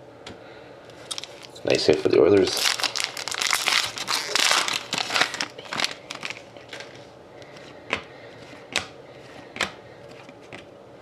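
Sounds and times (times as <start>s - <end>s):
card pack wrapper crinkling: 1.1s - 7.0s.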